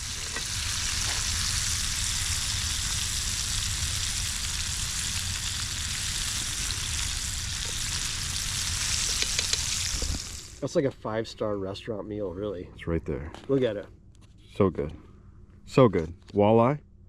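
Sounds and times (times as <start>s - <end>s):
food sizzling in hot oil: 0.0s - 10.6s.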